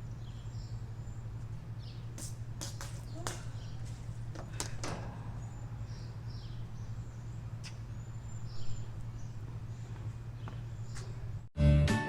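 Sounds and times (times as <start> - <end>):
steady low rumble: 0.0 - 11.5
wild birds chirping: 0.0 - 11.5.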